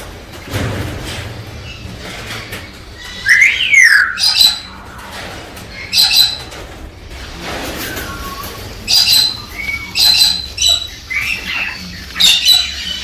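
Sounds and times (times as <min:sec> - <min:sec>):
cockatoo squawks: 0:03.2 - 0:05.1, 0:08.0 - 0:13.0
cockatoo screeching: 0:03.2 - 0:06.5, 0:07.8 - 0:13.0.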